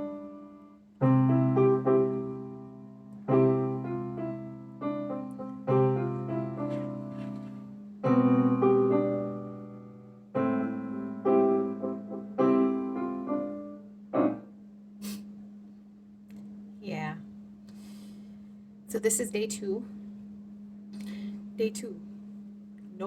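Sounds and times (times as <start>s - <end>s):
piano chords: 0.0s - 14.7s
steady low hum: 0.0s - 23.0s.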